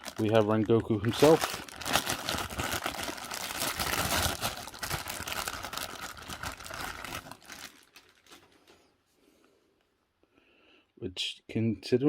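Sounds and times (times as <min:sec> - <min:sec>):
packaging crinkling: 0:00.0 - 0:08.8.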